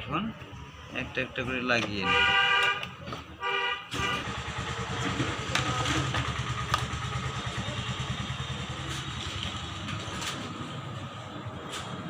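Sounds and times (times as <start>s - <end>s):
engine idling: 4.2s - 10.1s.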